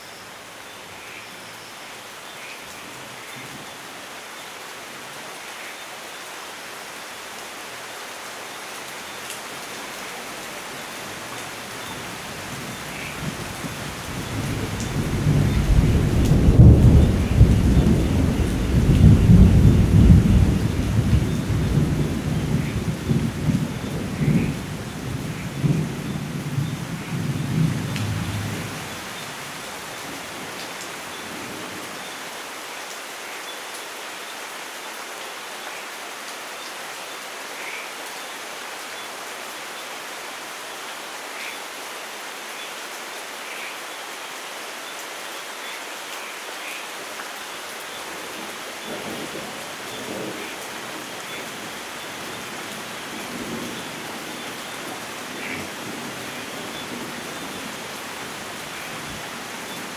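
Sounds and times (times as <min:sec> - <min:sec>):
steady rain: 0:00.0 - 0:59.9
thunder rumbling: 0:12.5 - 0:29.4.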